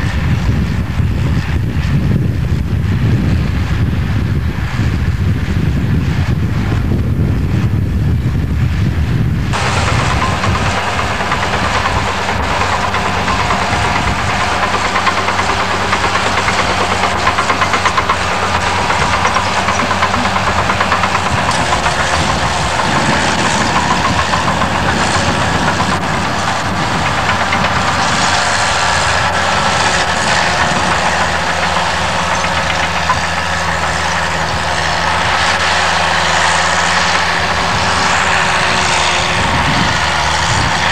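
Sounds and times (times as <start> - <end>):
bulldozer diesel engine running: 0.0 - 40.9
rattling clatter: 9.5 - 40.9.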